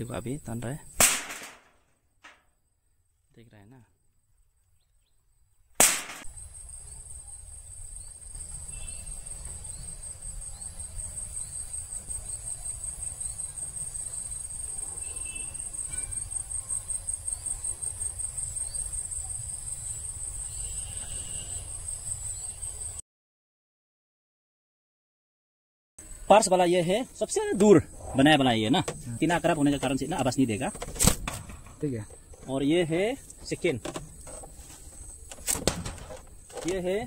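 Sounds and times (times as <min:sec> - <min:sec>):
insects trilling: 0:02.7 - 0:23.0, 0:26.0 - 0:37.0
sharp click: 0:05.8 - 0:06.3
faint chirps: 0:06.3 - 0:23.0.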